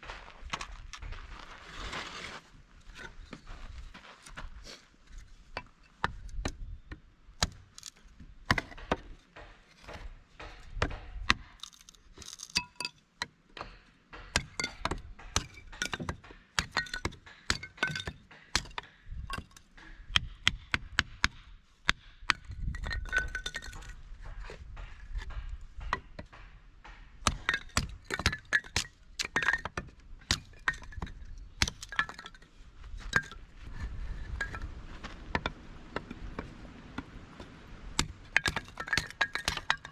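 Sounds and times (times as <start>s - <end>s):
hard objects clinking and knocking: 7.8s - 20.4s, 22.2s - 34.7s, 38.0s - 39.9s.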